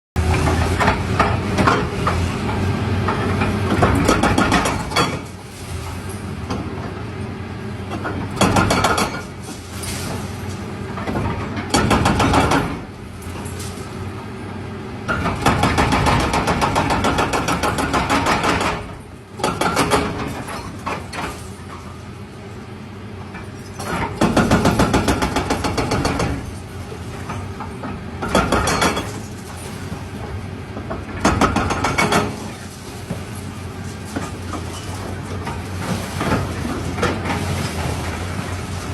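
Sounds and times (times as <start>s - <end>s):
bulldozer engine running: 0.2s - 38.9s.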